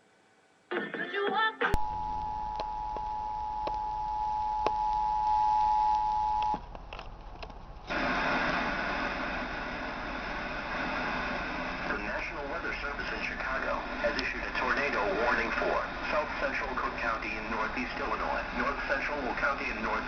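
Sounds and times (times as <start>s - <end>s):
low hum: 1.8s - 20.0s
steady hiss: 7.9s - 20.0s.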